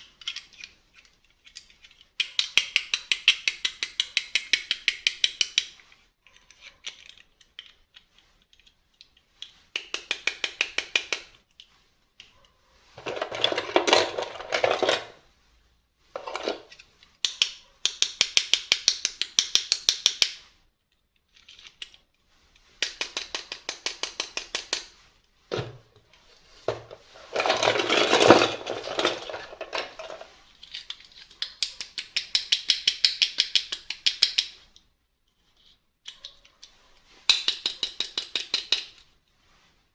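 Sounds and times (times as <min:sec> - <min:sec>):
crinkly packaging handling: 0:25.5 - 0:30.3.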